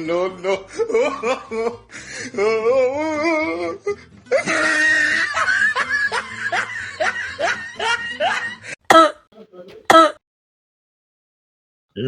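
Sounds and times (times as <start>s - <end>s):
music: 0.0s - 8.8s.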